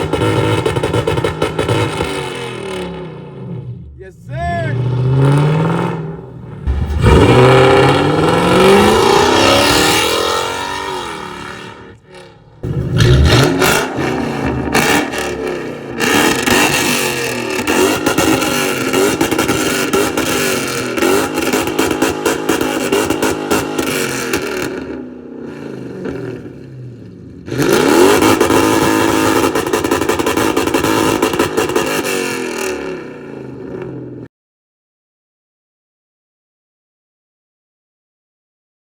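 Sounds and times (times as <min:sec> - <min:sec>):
car engine revving: 0:04.7 - 0:34.0.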